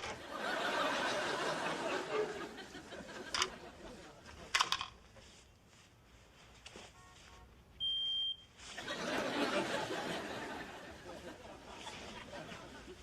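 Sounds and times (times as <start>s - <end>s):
smoke detector beep: 7.8s - 8.6s.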